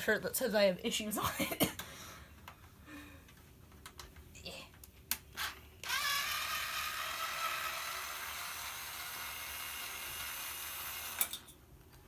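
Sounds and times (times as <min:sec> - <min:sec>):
small electric motor whirring: 0:05.8 - 0:11.4.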